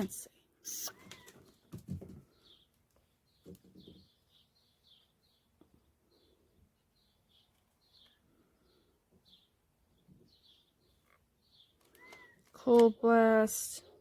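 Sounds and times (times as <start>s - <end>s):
faint bird chirping: 0.0s - 14.0s.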